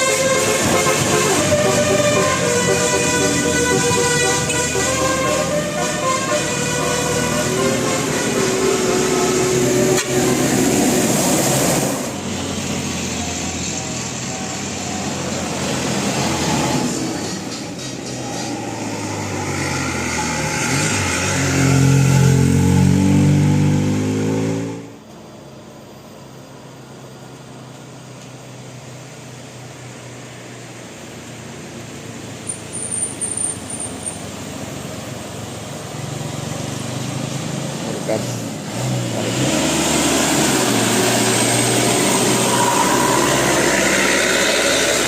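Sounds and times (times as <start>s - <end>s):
steady engine hum: 0.0s - 22.9s, 24.9s - 45.0s
bus engine accelerating: 0.0s - 45.0s
vehicle passing: 36.0s - 45.0s.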